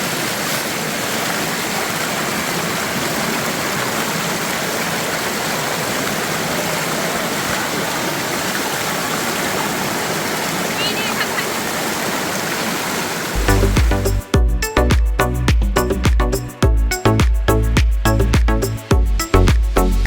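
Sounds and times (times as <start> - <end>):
waterfall rushing: 0.0 - 14.3.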